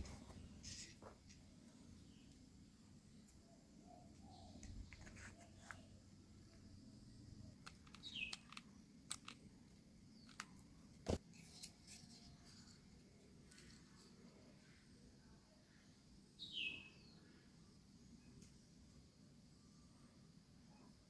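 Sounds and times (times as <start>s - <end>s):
faint small clicks and taps: 10.2s - 10.7s.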